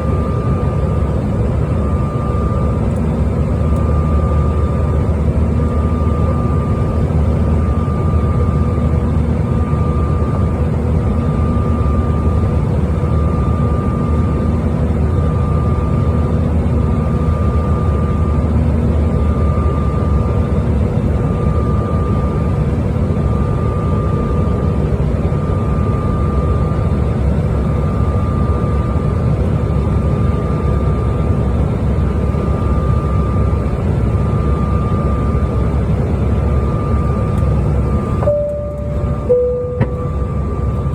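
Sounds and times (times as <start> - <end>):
airliner cabin drone: 0.0 - 40.9
thin high tone: 38.2 - 40.9.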